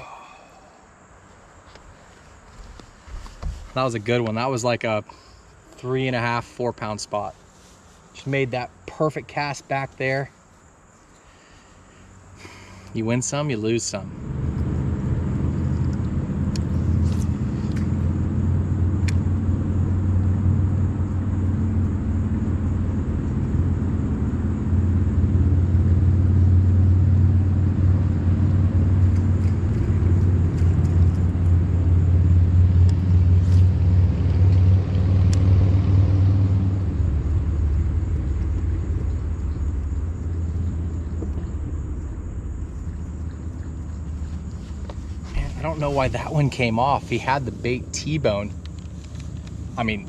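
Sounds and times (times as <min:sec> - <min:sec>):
boat motor humming: 0:13.6 - 0:50.0.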